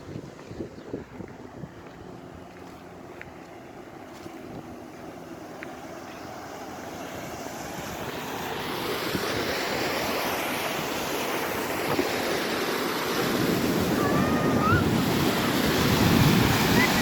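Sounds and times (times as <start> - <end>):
waterfall rushing: 6.8 - 17.0.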